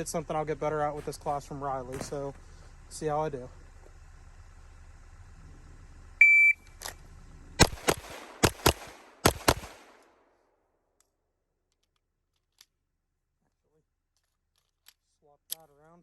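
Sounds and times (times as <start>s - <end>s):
shot timer beep: 6.2s - 6.7s
pistol shots: 7.6s - 10.4s.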